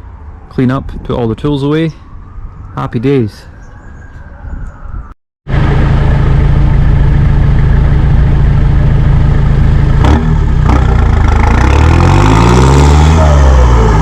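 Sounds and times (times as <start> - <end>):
diesel engine idling: 5.5 - 11.7.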